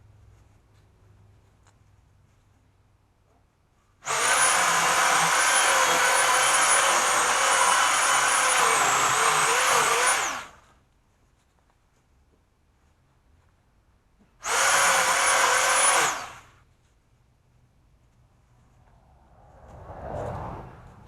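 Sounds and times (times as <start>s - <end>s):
electric chainsaw whining: 4.0s - 10.6s, 14.4s - 16.5s.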